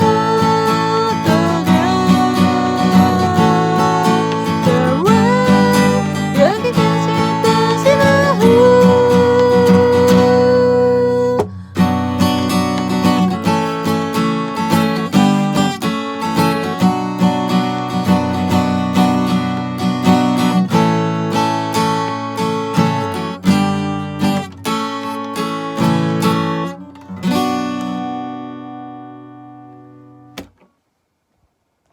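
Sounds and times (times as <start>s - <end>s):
acoustic guitar strumming chords: 0.0s - 30.6s.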